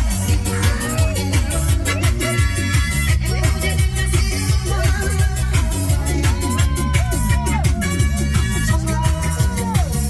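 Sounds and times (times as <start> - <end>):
dance music with heavy bass: 0.0 - 10.0.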